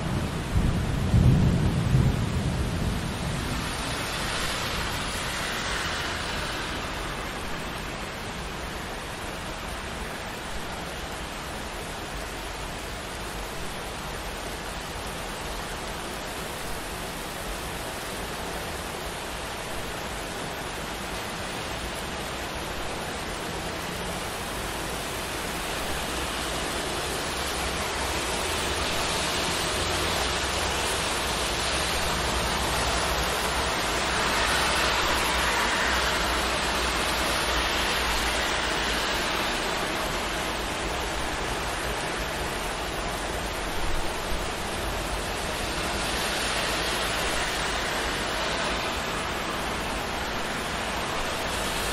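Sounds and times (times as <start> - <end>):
steady rain: 0.0 - 51.9
tyre hiss on wet street: 0.0 - 51.9.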